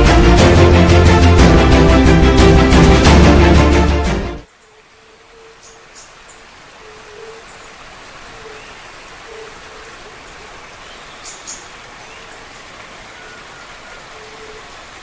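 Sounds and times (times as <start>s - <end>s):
waterfall rushing: 6.0s - 15.0s.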